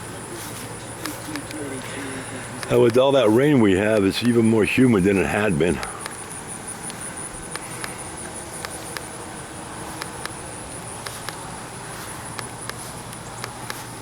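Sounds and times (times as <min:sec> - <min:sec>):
insect chorus trilling: 0:00.0 - 0:14.0
outdoor background noise: 0:00.0 - 0:14.0
faint ticks: 0:05.8 - 0:09.2, 0:09.9 - 0:14.0.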